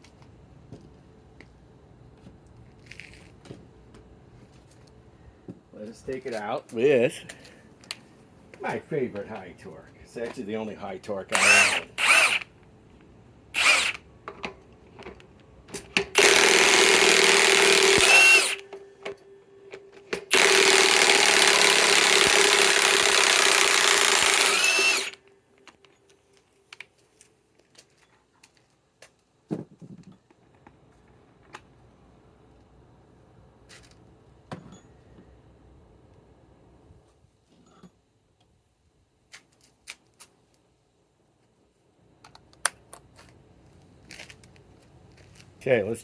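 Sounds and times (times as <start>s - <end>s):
impact wrench hammering: 16.0s - 18.7s, 20.1s - 25.2s.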